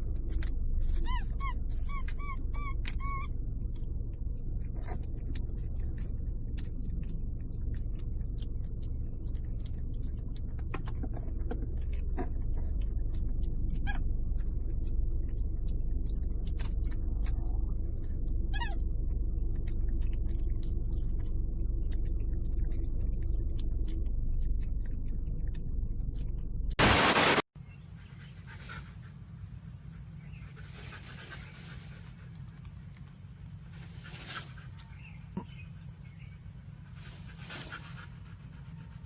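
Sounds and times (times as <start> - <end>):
low rumble: 0.0 - 27.4.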